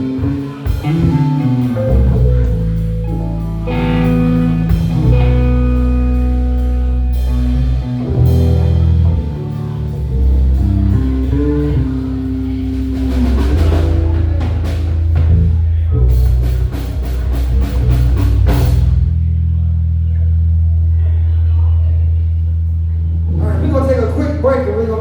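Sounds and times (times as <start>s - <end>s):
live band playing: 0.0s - 19.4s
electric guitar: 0.0s - 20.9s.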